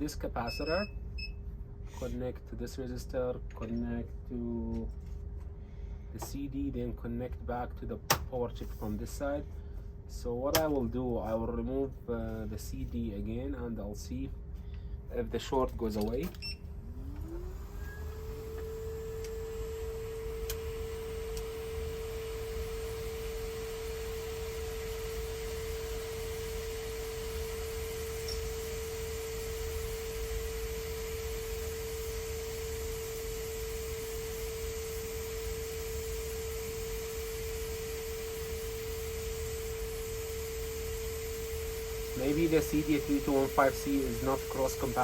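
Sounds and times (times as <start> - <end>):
blower whine: 16.2 - 45.0.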